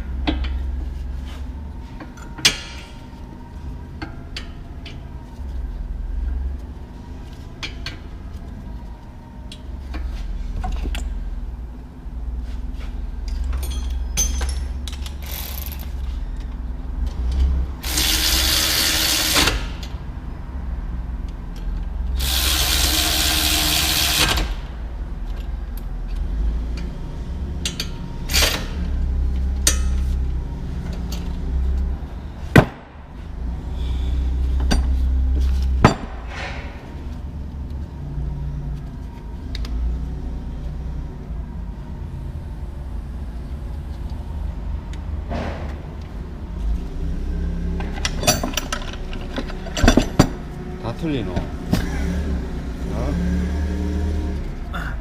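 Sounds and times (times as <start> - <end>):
metal knocks: 35.8 - 37.0.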